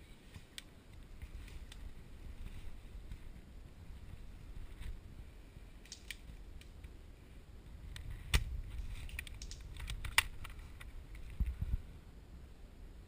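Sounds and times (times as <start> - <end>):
sharp clicks and snaps: 5.8 - 7.0, 7.9 - 11.6
loud cracks: 8.3 - 10.5.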